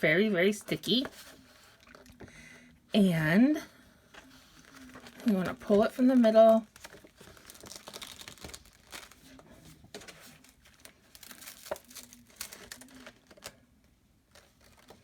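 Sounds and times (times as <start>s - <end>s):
plastic sheet crinkling: 4.1s - 15.0s.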